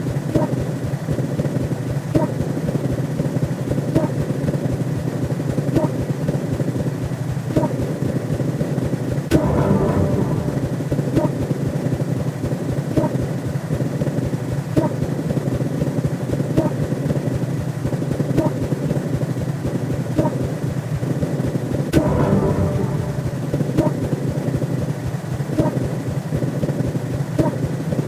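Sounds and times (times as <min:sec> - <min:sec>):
soft pulse: 0:00.0 - 0:08.4, 0:09.3 - 0:13.7, 0:21.9 - 0:28.0.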